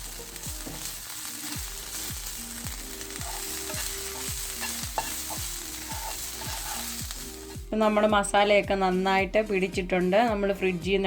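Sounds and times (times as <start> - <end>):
onions sizzling in a pan: 0.0 - 8.1
background music with a beat: 0.0 - 11.0
stirring in a pan: 0.2 - 7.6.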